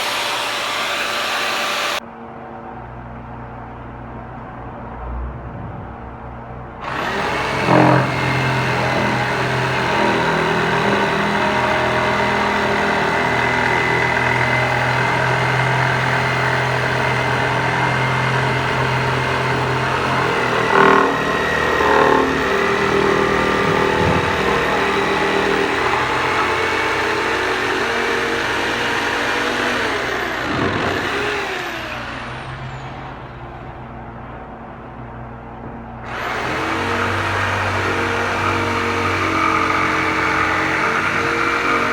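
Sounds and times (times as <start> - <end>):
power tool motor shaping wood: 0.0 - 2.0, 6.8 - 32.5, 36.0 - 41.9.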